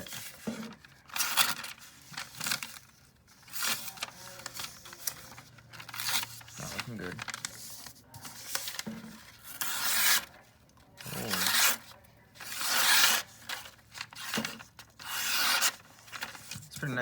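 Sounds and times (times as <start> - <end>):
knife slicing paper: 12.4 - 16.4.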